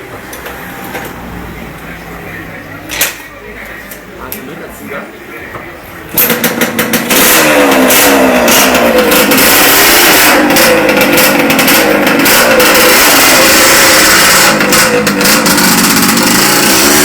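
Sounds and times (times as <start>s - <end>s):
motorcycle engine revving: 6.2s - 17.0s.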